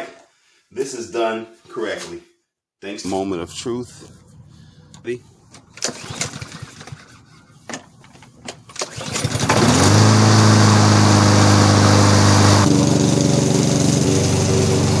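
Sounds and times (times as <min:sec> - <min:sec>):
lawn mower engine running: 0:05.6 - 0:15.0.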